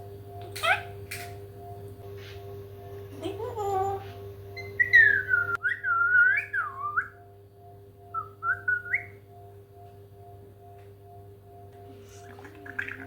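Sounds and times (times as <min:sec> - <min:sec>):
parrot whistling: 0:04.6 - 0:07.2, 0:08.1 - 0:09.2, 0:12.2 - 0:13.0.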